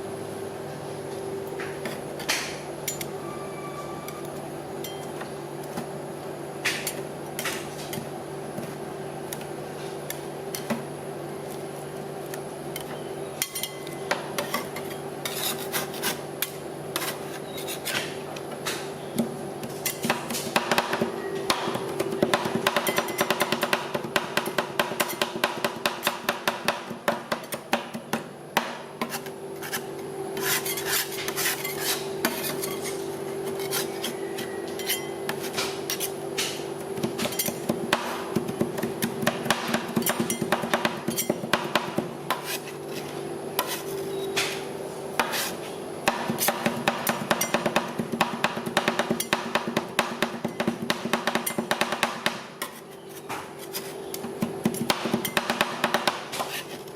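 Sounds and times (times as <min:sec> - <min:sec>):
metal spatulas scraping and chopping: 0:12.8 - 0:18.9, 0:29.0 - 0:37.7, 0:38.8 - 0:44.6, 0:45.2 - 0:47.6, 0:52.6 - 0:56.9.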